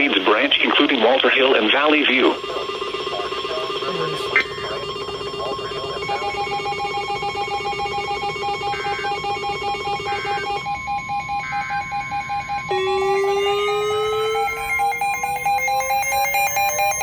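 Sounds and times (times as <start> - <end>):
rapidly pulsing beeps: 0.0 - 17.0
steady low tone: 2.2 - 17.0
electronic alert tones: 2.4 - 17.0.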